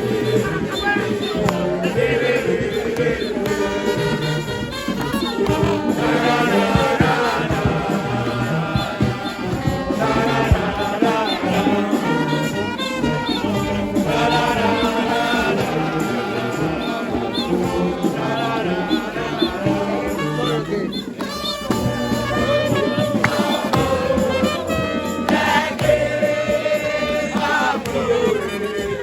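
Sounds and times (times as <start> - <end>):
steady bass: 0.0 - 20.8
brass instruments: 0.0 - 29.0
group of voices singing: 0.0 - 29.0.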